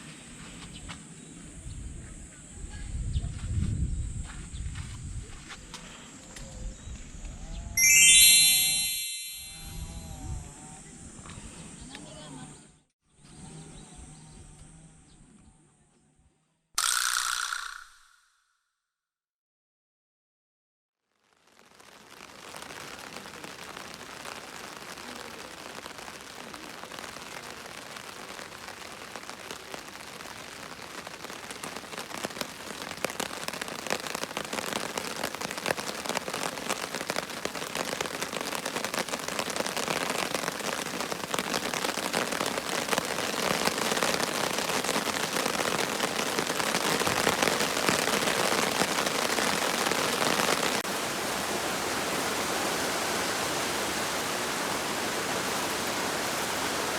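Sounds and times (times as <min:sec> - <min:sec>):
rain pattering: 0:21.3 - 0:56.9.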